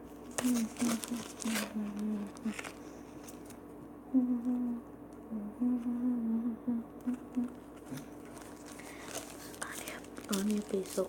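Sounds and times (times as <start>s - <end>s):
girl humming: 0.4s - 2.7s, 4.1s - 8.1s.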